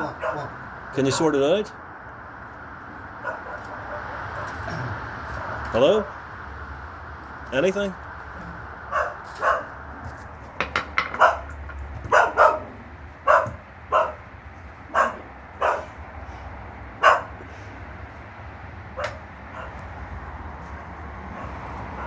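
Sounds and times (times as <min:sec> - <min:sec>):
dog barking: 0:00.0 - 0:01.3, 0:03.2 - 0:04.6, 0:08.9 - 0:09.8, 0:11.2 - 0:11.5, 0:12.1 - 0:14.2, 0:14.9 - 0:16.0, 0:17.0 - 0:17.4, 0:19.0 - 0:19.8, 0:21.3 - 0:22.0.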